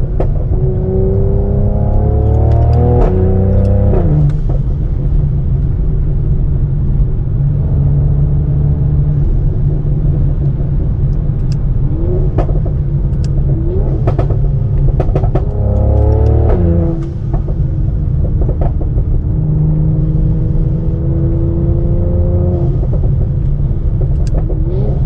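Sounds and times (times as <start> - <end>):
car exhaust cruising: 0.0 - 25.0
exhaust pops and crackles: 9.8 - 19.6, 22.4 - 25.0.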